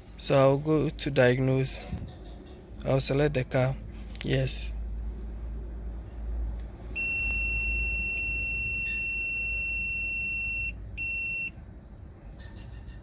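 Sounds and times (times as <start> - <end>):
electronic buzzer beeping: 7.0 - 11.5.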